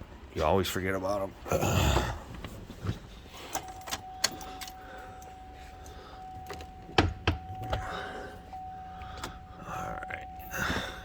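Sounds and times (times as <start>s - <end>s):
keys jangling: 3.4s - 6.9s
steady high tone: 3.6s - 11.0s.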